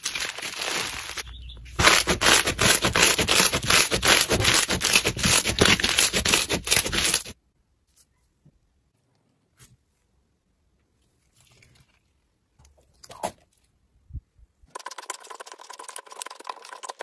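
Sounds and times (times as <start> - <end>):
crunchy slime crackling: 0.0 - 7.3.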